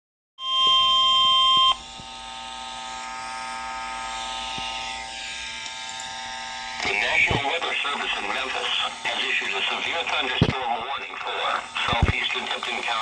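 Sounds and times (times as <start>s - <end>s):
weather radio alarm tone: 0.4s - 1.8s
radio broadcast hum and hiss: 6.8s - 13.0s.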